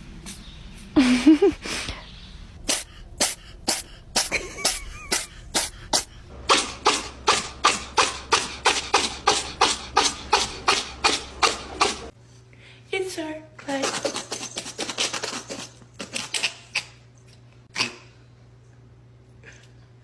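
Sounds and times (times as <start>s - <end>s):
cat sneezing: 2.6s - 6.6s.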